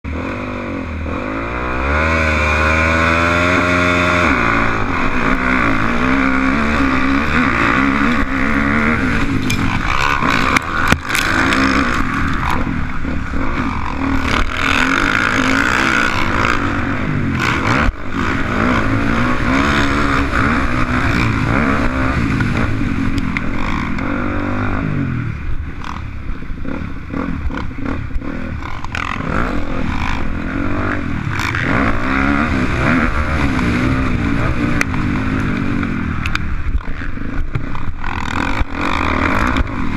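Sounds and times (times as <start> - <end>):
dirt bike engine revving: 0.0 - 39.9.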